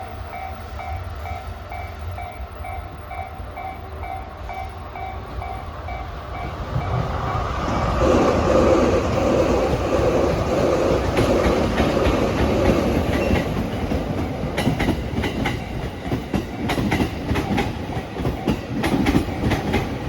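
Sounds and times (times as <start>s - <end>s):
approaching train: 0.0s - 20.0s.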